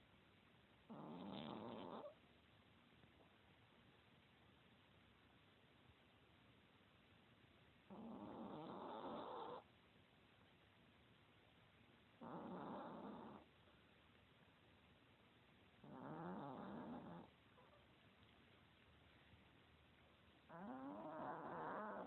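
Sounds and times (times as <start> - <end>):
small dog snoring: 0.9 - 2.2, 7.8 - 9.7, 12.2 - 13.5, 15.8 - 17.8, 20.5 - 22.0.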